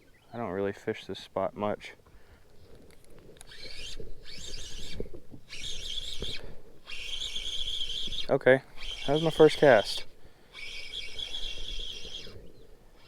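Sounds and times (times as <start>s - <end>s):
spinning reel whirring: 3.4s - 13.0s.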